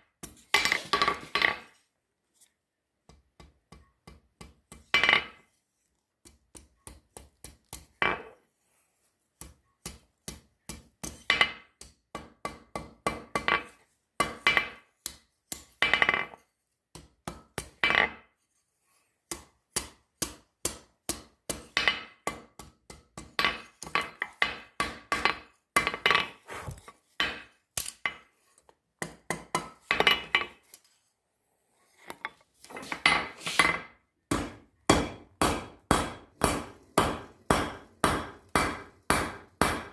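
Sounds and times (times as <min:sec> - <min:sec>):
hammer striking steel on anvil: 0:33.0 - 0:39.9.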